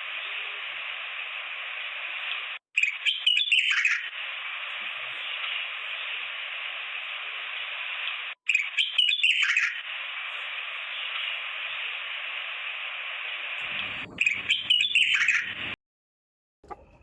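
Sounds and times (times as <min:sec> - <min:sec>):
background bird calls: 0:02.8 - 0:06.2, 0:07.9 - 0:12.2, 0:13.6 - 0:15.8
quick loud bird chirps: 0:13.8 - 0:15.7.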